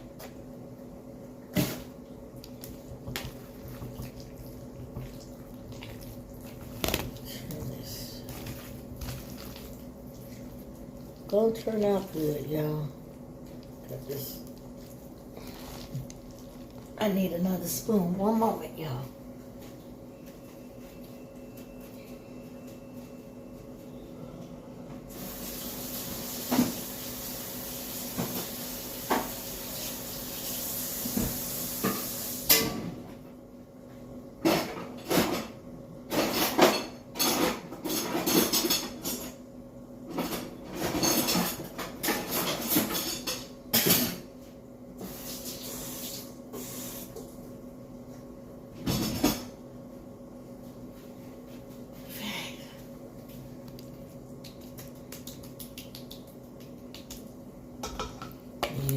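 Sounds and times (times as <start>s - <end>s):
kitchen tap running: 25.1s - 32.5s
dishes and cutlery clattering: 40.2s - 44.2s.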